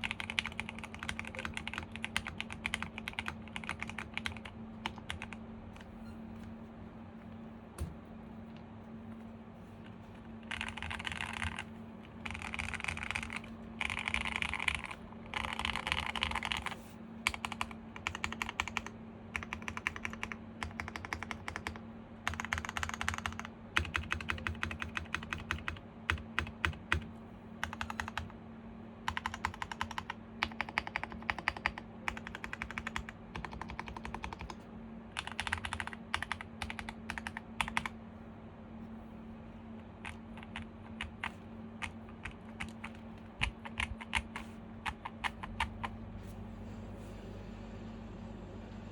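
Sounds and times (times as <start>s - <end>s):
mechanical keyboard typing: 0.0s - 5.4s, 10.4s - 28.4s, 29.1s - 34.6s, 35.2s - 38.0s, 40.0s - 45.9s.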